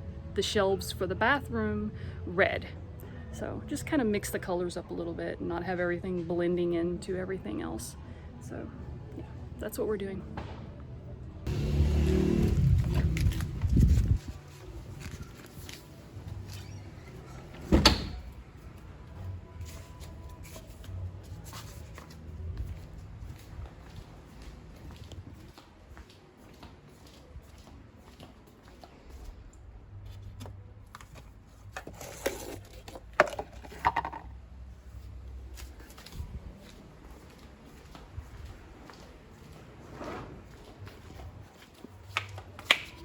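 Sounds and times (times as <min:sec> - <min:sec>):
knocks and clicks of objects handled: 0:30.9 - 0:34.4.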